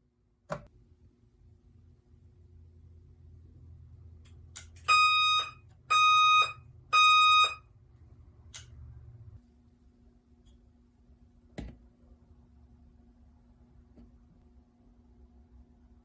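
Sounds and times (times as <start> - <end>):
fire alarm horn blasts: 4.8 - 7.7.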